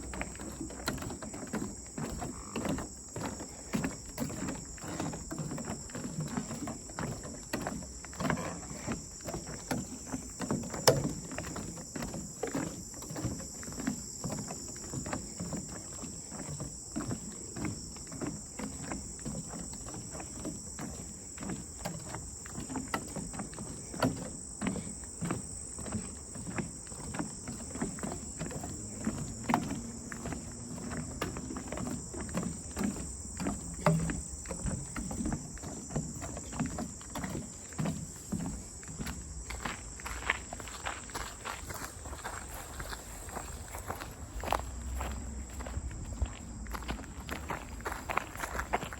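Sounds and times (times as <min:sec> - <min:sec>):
footsteps on a path: 0:00.0 - 0:48.9
insects chorus: 0:00.0 - 0:48.9.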